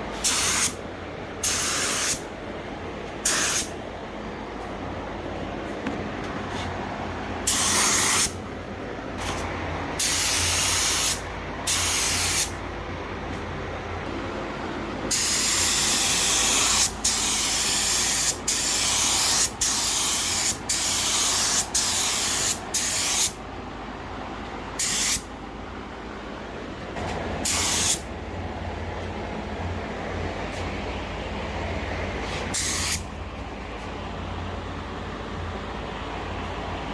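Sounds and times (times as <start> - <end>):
steady low hum: 0.0 - 36.9
pneumatic air gun hissing: 0.2 - 0.8, 1.4 - 2.2, 3.2 - 3.7, 7.5 - 8.4, 10.0 - 12.6, 15.1 - 23.4, 24.8 - 25.3, 27.4 - 28.0, 32.5 - 33.0.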